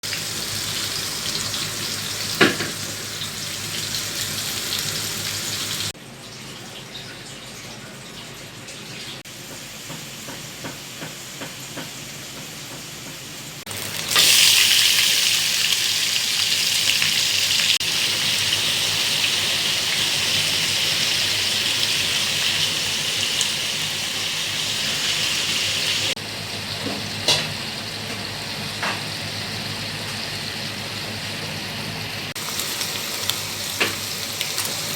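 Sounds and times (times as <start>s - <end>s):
shrimps sizzling in a pan: 0.1s - 5.9s, 13.6s - 26.2s, 32.3s - 34.9s.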